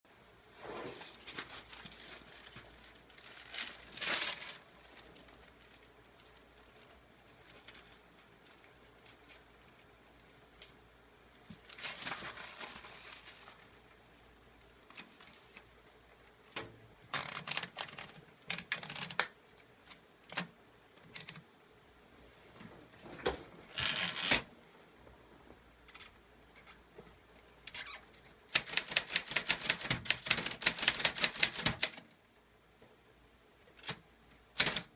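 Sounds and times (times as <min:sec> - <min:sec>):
rustles and clunks: 0:22.4 - 0:23.8.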